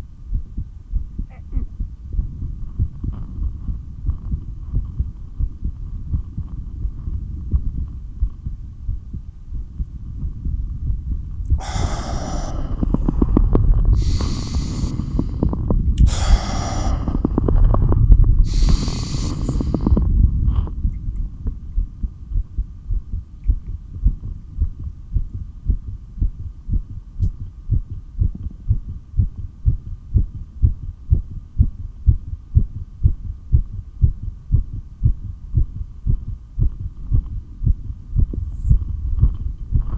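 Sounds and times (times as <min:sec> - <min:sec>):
heartbeat through stethoscope: 0:00.0 - 0:39.9
loud breath sounds: 0:11.5 - 0:20.2.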